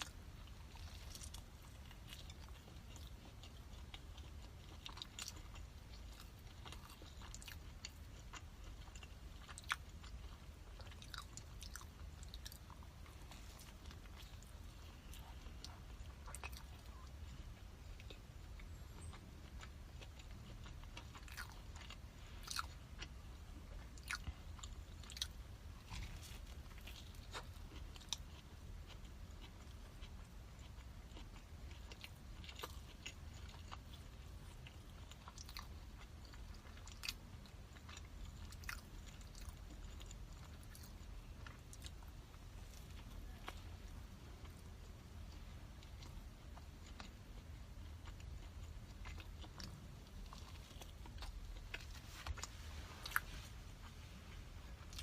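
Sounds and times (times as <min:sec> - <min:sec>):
person chewing food: 0:00.0 - 0:55.0.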